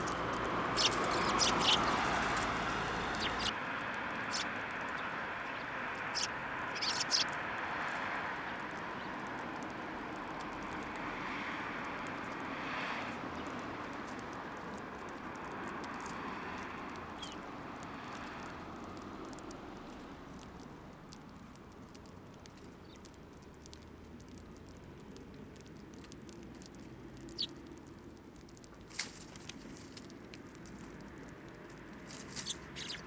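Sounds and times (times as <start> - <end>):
passing road traffic: 0.0 - 33.0
high bird chirps: 0.8 - 3.6, 4.2 - 7.3, 32.4 - 33.0.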